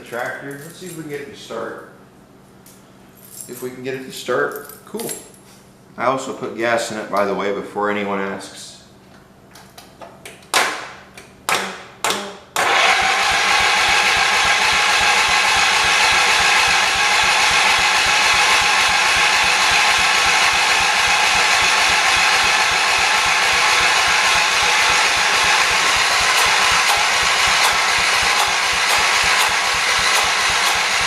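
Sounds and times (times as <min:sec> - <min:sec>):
engine starter cranking: 0:12.6 - 0:31.0.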